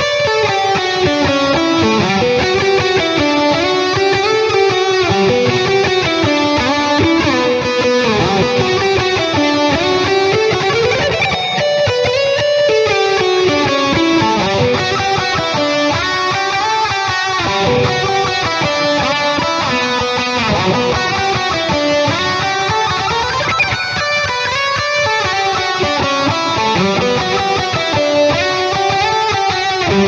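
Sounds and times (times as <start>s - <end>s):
distorted electric guitar riff: 0.0s - 30.0s.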